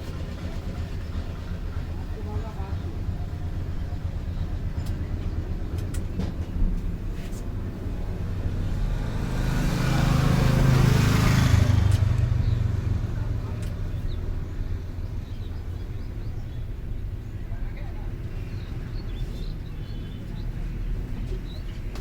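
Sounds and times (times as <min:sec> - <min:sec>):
street traffic rumbling: 0:00.0 - 0:22.0
vehicle passing close by: 0:06.8 - 0:16.2.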